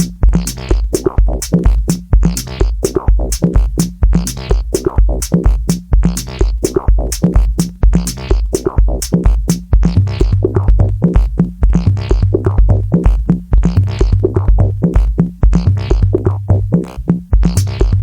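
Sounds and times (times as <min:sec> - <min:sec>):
electronic drum beat: 0:00.0 - 0:18.0.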